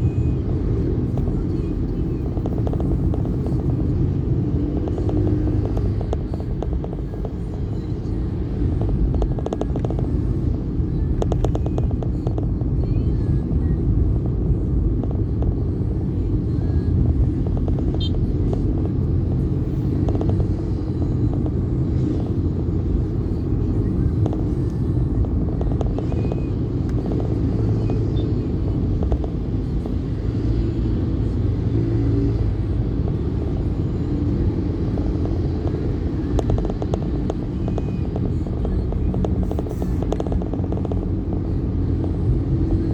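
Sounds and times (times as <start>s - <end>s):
moving vehicle rumble: 0.0s - 42.9s
road traffic: 0.0s - 42.9s.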